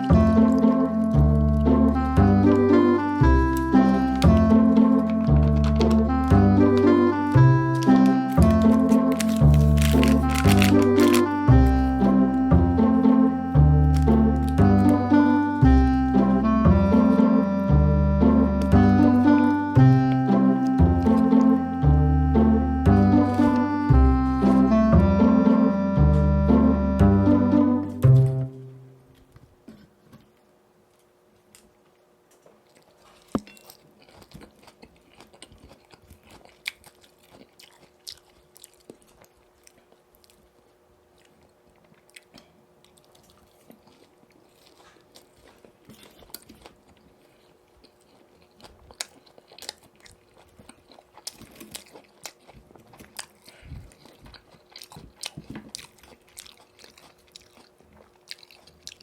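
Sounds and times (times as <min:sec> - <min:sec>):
crunching bites and chewing: 0:00.0 - 0:12.9, 0:13.6 - 0:16.6, 0:32.3 - 0:59.0.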